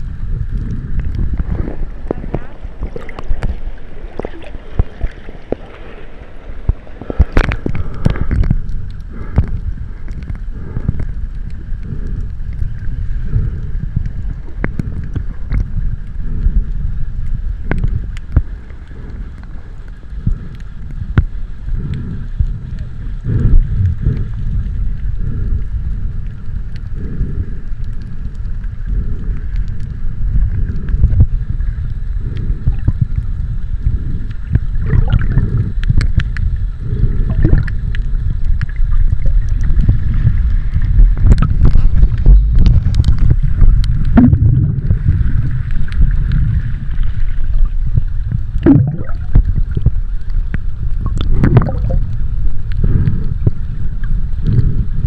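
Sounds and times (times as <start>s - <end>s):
muffled water sloshing: 0.0s - 11.2s, 34.0s - 54.8s
steady low rumble: 0.0s - 55.0s.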